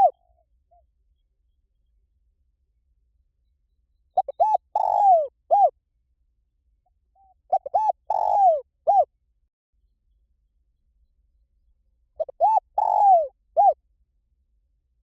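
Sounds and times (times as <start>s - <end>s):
dove cooing: 0.0s - 0.2s, 4.2s - 5.7s, 7.2s - 9.1s, 12.2s - 13.8s.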